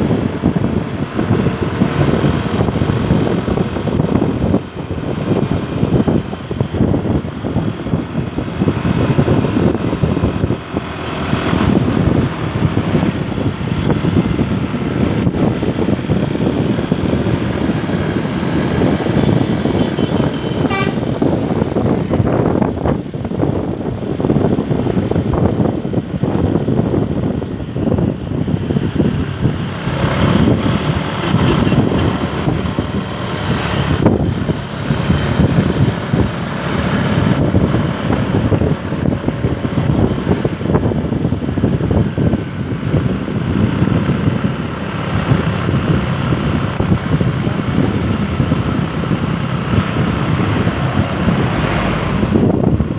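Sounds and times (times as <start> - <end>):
bus engine and road noise: 0.0 - 52.9
multi-tone air horn: 19.9 - 21.2.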